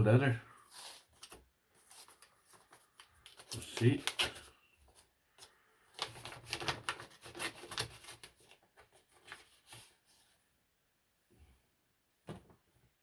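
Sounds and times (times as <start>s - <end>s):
paper and packaging rustling: 0.7s - 10.3s.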